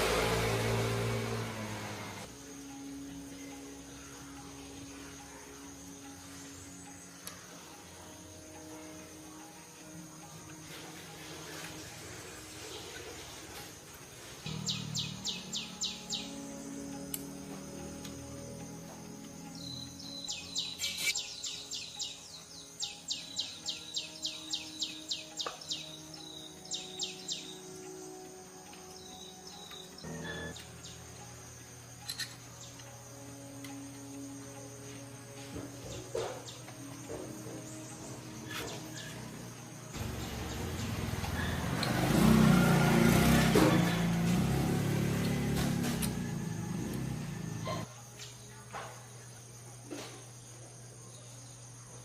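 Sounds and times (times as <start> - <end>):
vehicle engine running: 0.0 - 2.8, 14.3 - 20.2, 37.1 - 47.9
bird calling in descending notes: 14.5 - 17.6.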